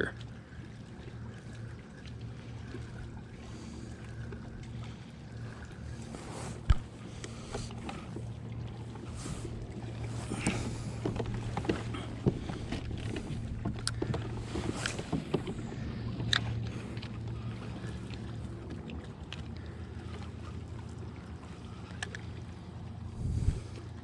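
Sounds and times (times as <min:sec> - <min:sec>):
water wash: 0:00.0 - 0:24.0
wind: 0:00.0 - 0:24.0
low hum: 0:00.1 - 0:24.0
small clicks and knocks: 0:11.0 - 0:15.6.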